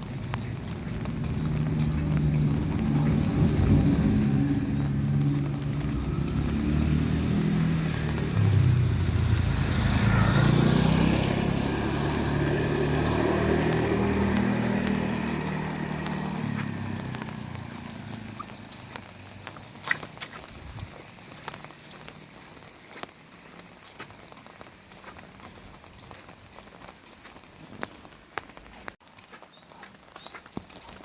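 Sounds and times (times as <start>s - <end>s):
vehicle engine passing by: 0.0s - 20.1s.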